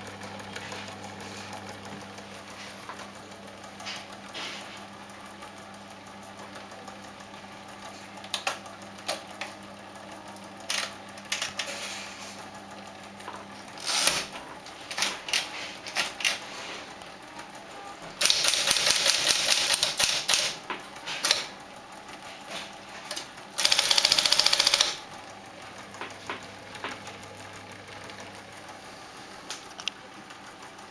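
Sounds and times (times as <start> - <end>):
typewriter motor humming: 0.0 - 13.0, 13.6 - 30.9
typewriter keys striking: 18.2 - 21.5, 23.6 - 25.0.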